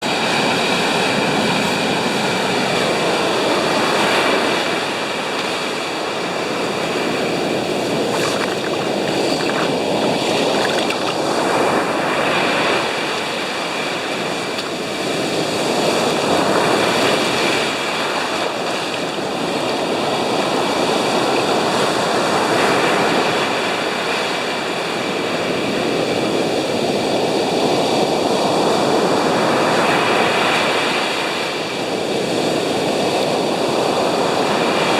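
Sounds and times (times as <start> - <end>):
waves breaking on beach: 0.1 - 25.6
wind blowing: 7.4 - 11.9.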